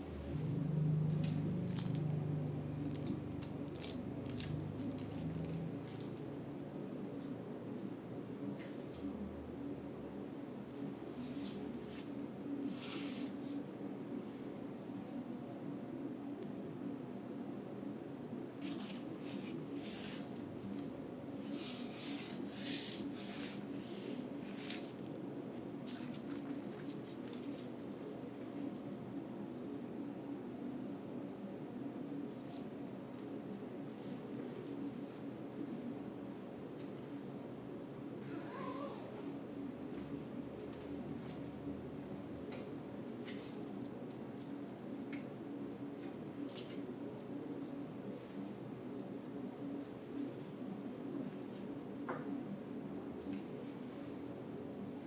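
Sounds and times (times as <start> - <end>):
steady low hum: 0.0 - 55.0
scraping and rustling handling noise: 18.6 - 28.8.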